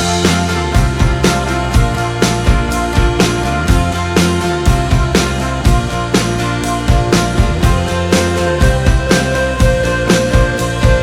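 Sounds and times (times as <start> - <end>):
guitar music: 0.0 - 11.0
steady drum beat: 0.0 - 11.0.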